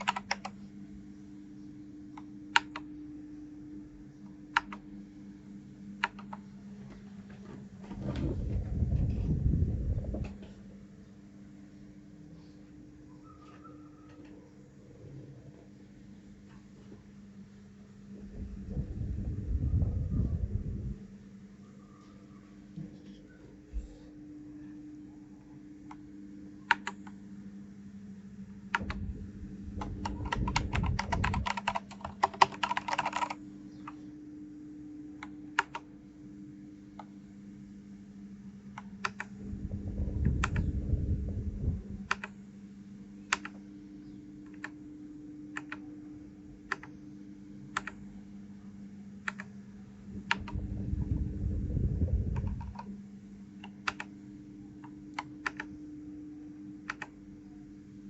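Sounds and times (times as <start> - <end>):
mechanical keyboard keys clicking: 0.0 - 0.5, 6.0 - 6.4, 30.0 - 33.4, 35.6 - 35.8, 55.2 - 55.7
steady low hum: 0.0 - 58.0
low rumble: 7.9 - 10.5, 18.1 - 21.2, 28.7 - 31.5, 39.4 - 42.2, 50.0 - 52.9.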